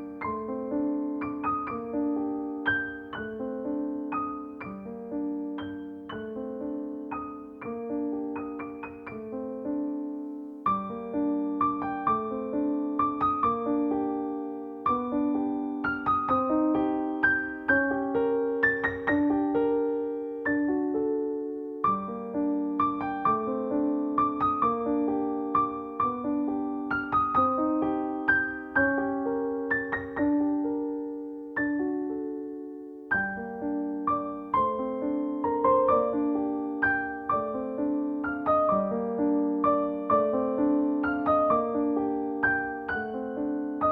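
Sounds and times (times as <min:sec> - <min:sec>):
gentle piano music: 0:00.0 - 0:43.9.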